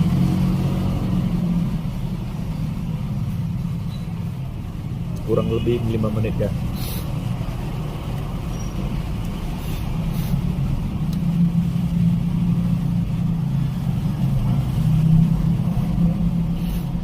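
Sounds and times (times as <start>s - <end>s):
steady low rumble: 6.4s - 17.0s.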